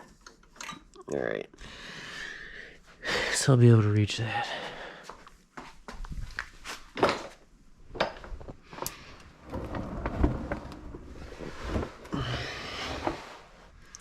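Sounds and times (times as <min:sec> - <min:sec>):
wiring handling clicks and rustling: 0:00.0 - 0:01.1.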